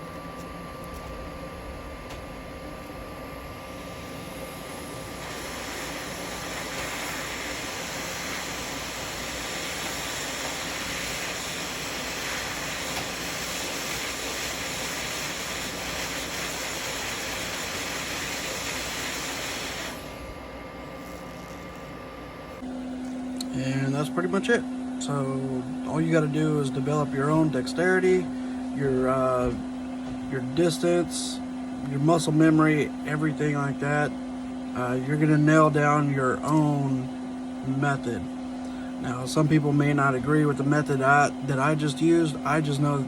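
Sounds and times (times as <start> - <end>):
hot air station hissing: 1.8 - 22.7.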